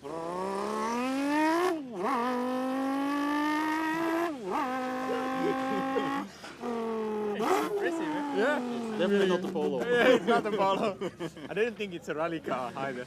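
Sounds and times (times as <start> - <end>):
person imitating racing car engine: 0.0 - 9.6.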